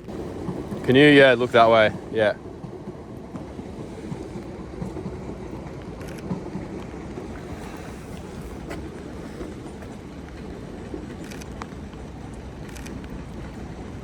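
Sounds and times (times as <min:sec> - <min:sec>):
camera shutter clicks: 0:11.2 - 0:11.6.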